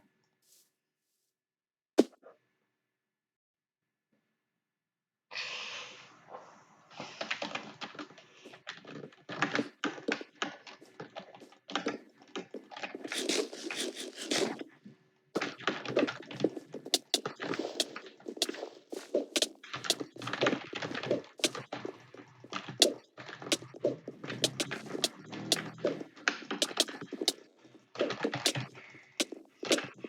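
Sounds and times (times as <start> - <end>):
typing on a computer keyboard: 17.0 - 18.5, 22.8 - 27.4, 28.2 - 30.0.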